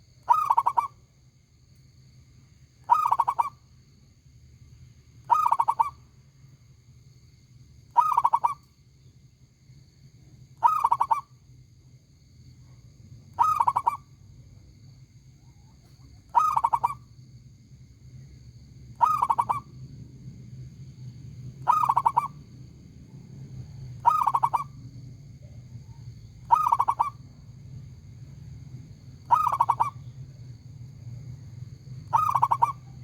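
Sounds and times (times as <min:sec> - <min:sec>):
dove cooing: 0:00.3 - 0:00.9, 0:02.9 - 0:03.5, 0:05.3 - 0:05.9, 0:08.0 - 0:08.6, 0:10.6 - 0:11.2, 0:13.4 - 0:14.0, 0:16.3 - 0:17.0, 0:19.0 - 0:19.7, 0:21.6 - 0:22.4, 0:24.0 - 0:24.8, 0:26.4 - 0:27.2, 0:29.3 - 0:30.1, 0:32.1 - 0:33.0.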